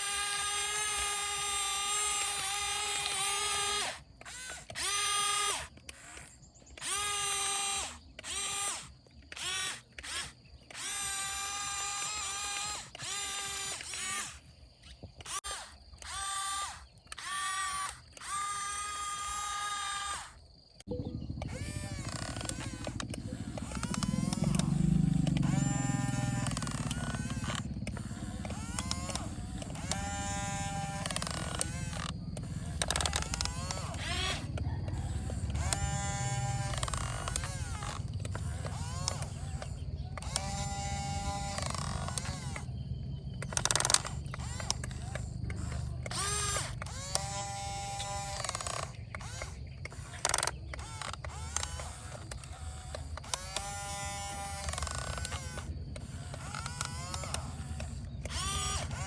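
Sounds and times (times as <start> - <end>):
excavator motors whirring: 0.0 - 59.0
steady low hum: 20.5 - 59.0
buzzing whine bending in pitch: 20.9 - 59.0.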